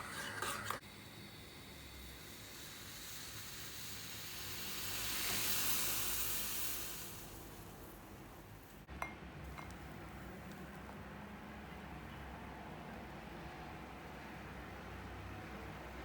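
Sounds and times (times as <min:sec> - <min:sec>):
rushing hiss: 0:02.1 - 0:08.0.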